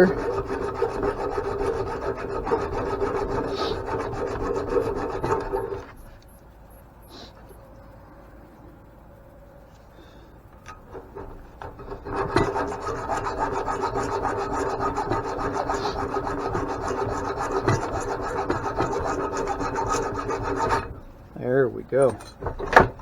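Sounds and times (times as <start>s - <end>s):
tool rasping against metal: 0.0s - 6.2s, 10.7s - 21.2s, 22.0s - 23.0s.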